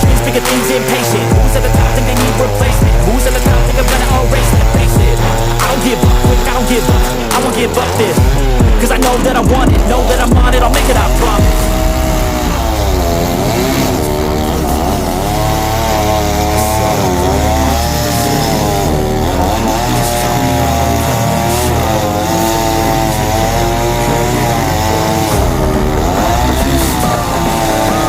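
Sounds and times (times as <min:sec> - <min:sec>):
chainsaw cutting wood: 0:00.0 - 0:28.0.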